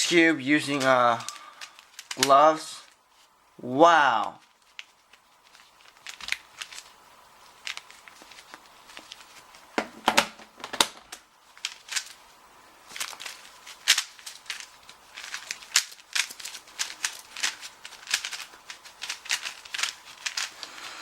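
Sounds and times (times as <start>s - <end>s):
puzzle cube plastic clicks: 0.7s - 2.4s, 13.0s - 20.7s.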